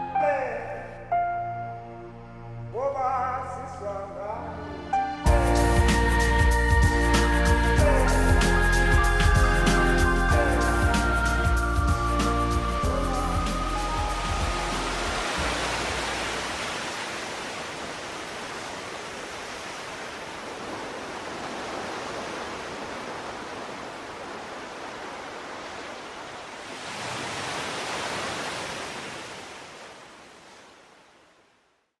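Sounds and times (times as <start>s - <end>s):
ocean waves breaking: 13.2s - 31.3s.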